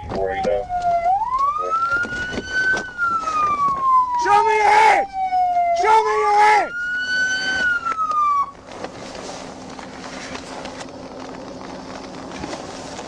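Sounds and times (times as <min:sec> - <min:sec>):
police siren wailing: 0:00.0 - 0:08.7
car idling hum: 0:00.0 - 0:13.0.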